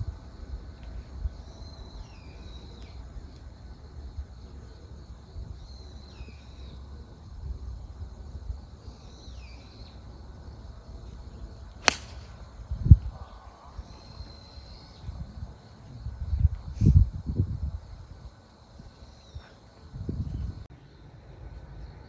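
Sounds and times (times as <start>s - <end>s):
wind rumbling on microphone: 0.0s - 9.4s, 10.0s - 22.0s
golf club striking ball: 11.8s - 12.4s.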